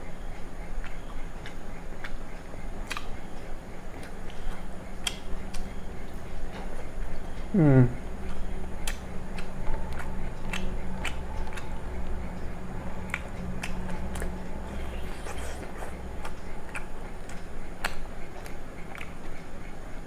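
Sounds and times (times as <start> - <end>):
steady low hum: 0.0 - 20.0
chewing and wet mouth clicks: 2.8 - 3.2, 4.0 - 5.7, 8.2 - 11.7, 13.1 - 19.1.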